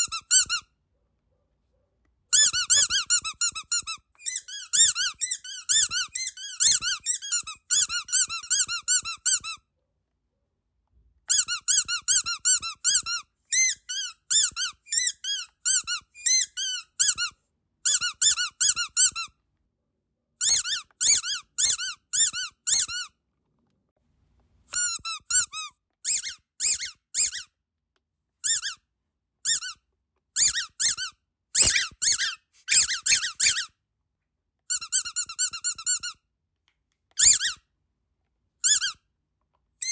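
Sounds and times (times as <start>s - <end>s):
squeaky dog toy squeaks: 0.0s - 0.7s, 2.3s - 9.7s, 11.3s - 19.4s, 20.4s - 23.2s, 24.7s - 27.6s, 28.4s - 33.8s, 34.7s - 36.2s, 37.1s - 37.7s, 38.6s - 39.0s.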